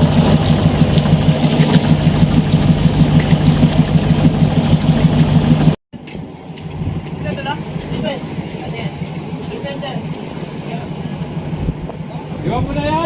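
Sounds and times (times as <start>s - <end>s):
diesel engine running: 0.0s - 5.8s.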